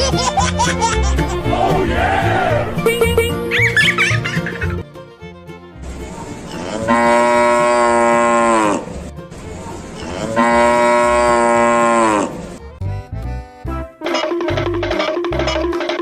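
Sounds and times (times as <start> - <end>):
cow mooing: 6.6 - 9.0, 10.0 - 12.4.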